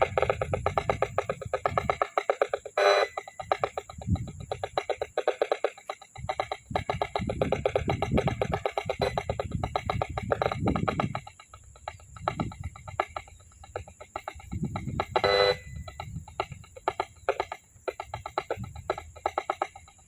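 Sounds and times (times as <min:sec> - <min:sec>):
pulsing electronic alarm ringing: 0:00.0 - 0:20.0
deep irregular rumbles: 0:03.4 - 0:05.2, 0:06.1 - 0:20.0.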